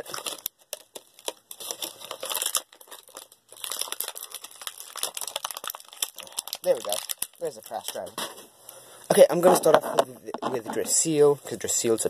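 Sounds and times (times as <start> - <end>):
plastic packaging crinkling and tearing: 0.0 - 8.2.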